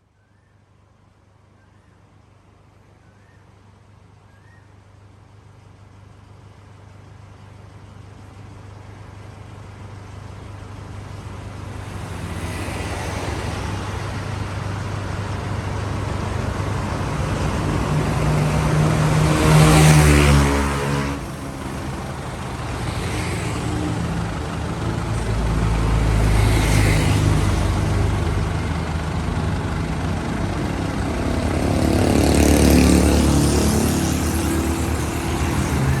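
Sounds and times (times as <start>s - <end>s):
vehicles driving past: 7.5s - 36.0s.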